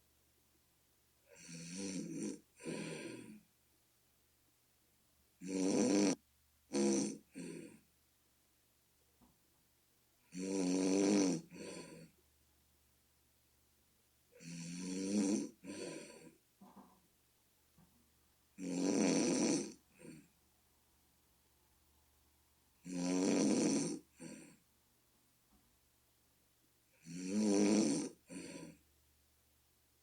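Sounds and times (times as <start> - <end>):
person snoring: 1.3 - 3.4, 5.4 - 7.8, 10.3 - 12.1, 14.4 - 16.4, 18.6 - 20.3, 22.8 - 24.6, 27.0 - 28.8.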